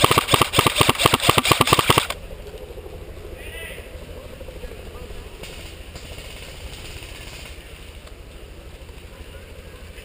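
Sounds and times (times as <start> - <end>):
fluttering low rumble on microphone: 2.2 - 10.0.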